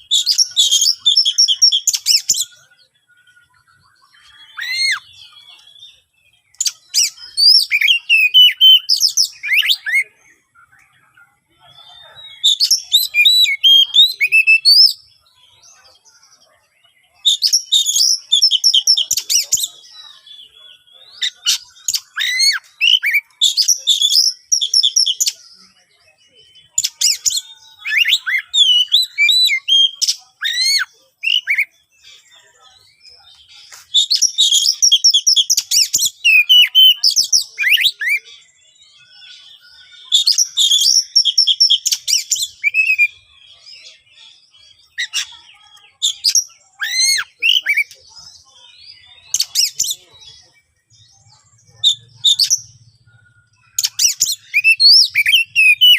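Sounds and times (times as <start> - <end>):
bird singing harsh song: 0.0 - 55.9.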